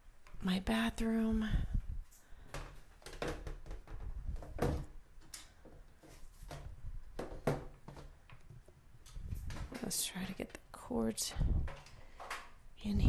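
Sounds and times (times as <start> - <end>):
objects knocking and clicking: 2.5 - 10.0.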